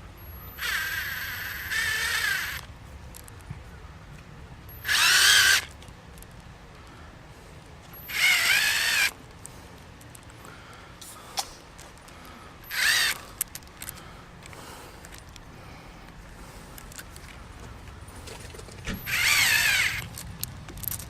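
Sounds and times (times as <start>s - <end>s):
cordless drill motor whining: 0.3s - 2.7s, 4.7s - 5.7s, 8.0s - 9.2s, 12.6s - 13.3s, 19.0s - 20.1s.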